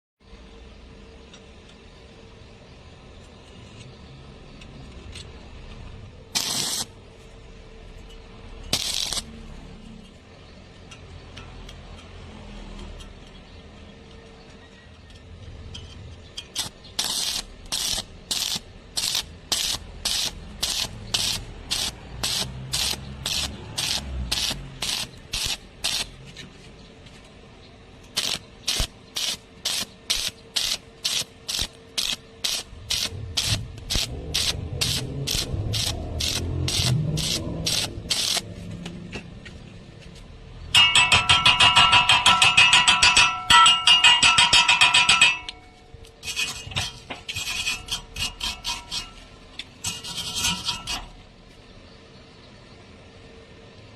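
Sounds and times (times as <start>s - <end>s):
welding arc crackling: 6.3s - 7.0s, 8.7s - 9.6s, 16.4s - 26.3s, 28.1s - 38.6s.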